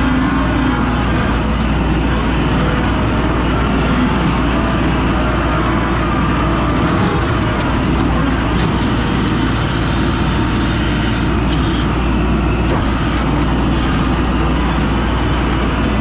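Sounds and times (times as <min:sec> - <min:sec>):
skid steer engine running: 0:00.0 - 0:16.0.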